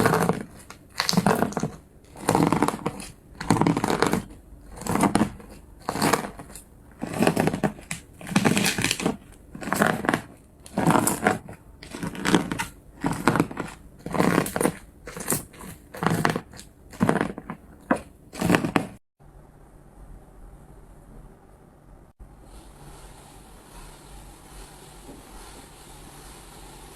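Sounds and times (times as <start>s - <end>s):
slime squishing by hand: 0.0s - 19.0s.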